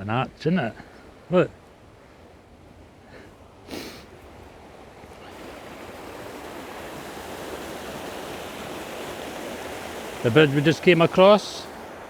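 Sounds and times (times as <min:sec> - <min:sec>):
rushing stream water: 0:00.0 - 0:12.0.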